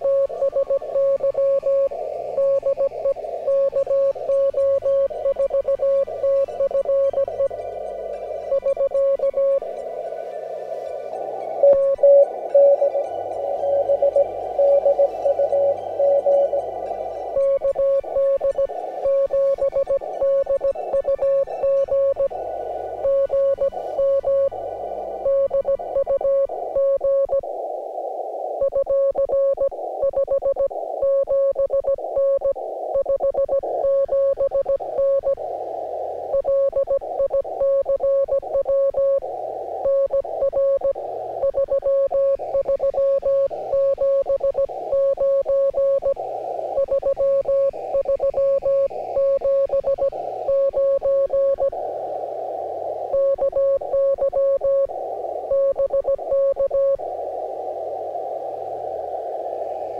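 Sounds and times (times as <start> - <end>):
radio band hiss: 0.0 - 59.9
morse code tone: 11.6 - 13.0, 13.6 - 16.7, 53.2 - 54.9.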